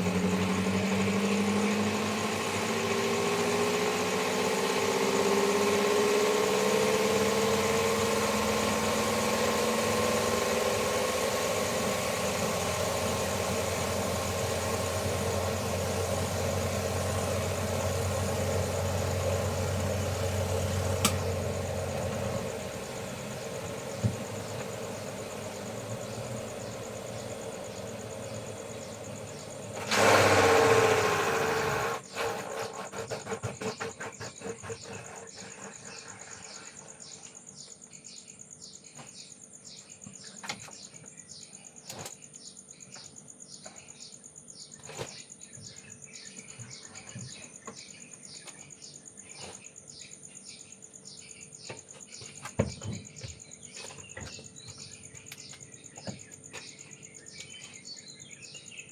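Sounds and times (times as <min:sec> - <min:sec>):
insects chirping: 0:00.0 - 0:58.9.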